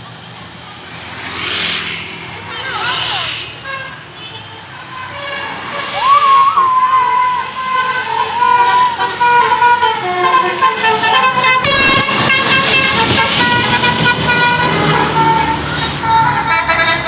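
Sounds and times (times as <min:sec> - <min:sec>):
musical bus horn playing tune: 0:03.6 - 0:06.2, 0:07.0 - 0:17.0.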